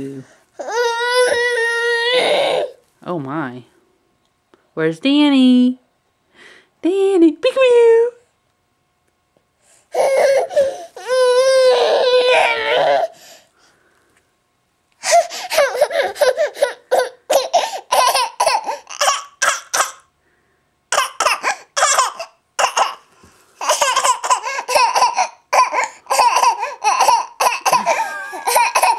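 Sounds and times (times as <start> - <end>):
baby squealing: 10.0 - 13.0, 15.0 - 20.0, 20.9 - 23.0, 23.6 - 28.9
baby laughing: 15.0 - 20.0, 21.0 - 23.0, 23.6 - 28.9.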